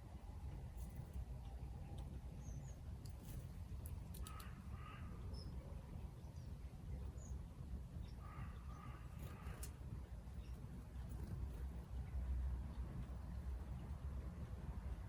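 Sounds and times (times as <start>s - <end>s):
small clicks: 3.0s - 4.5s.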